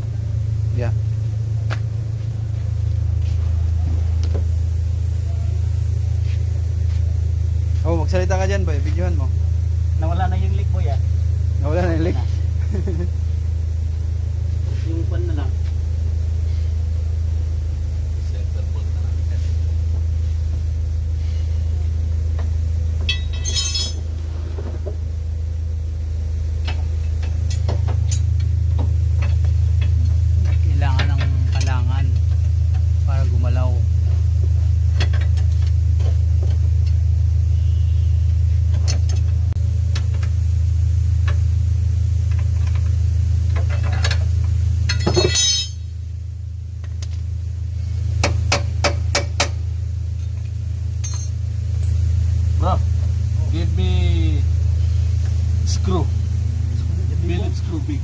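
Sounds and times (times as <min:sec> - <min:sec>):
steady low hum: 0:00.0 - 0:58.0
steady low rumble: 0:00.0 - 0:58.0
hammer striking metal: 0:23.0 - 0:24.0, 0:44.9 - 0:45.9
metal tools clinking on car parts: 0:23.0 - 0:24.2, 0:44.9 - 0:45.9, 0:51.0 - 0:52.1
metallic clatter: 0:23.1 - 0:24.2, 0:44.9 - 0:45.9.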